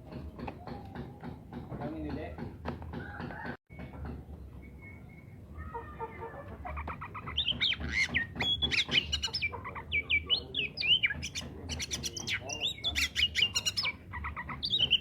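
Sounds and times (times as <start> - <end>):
songbird singing whistled notes: 3.7 - 5.5, 7.4 - 15.0.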